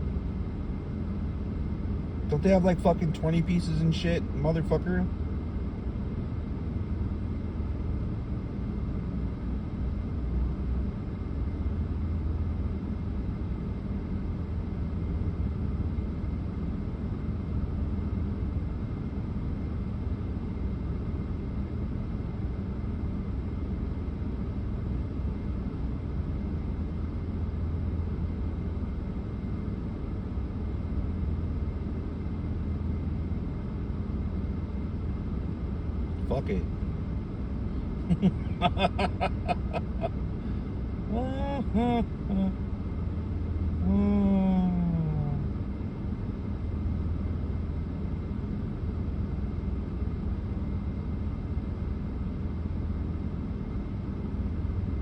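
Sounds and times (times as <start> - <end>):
vehicle running low rumble: 0.0 - 17.4, 33.3 - 50.0.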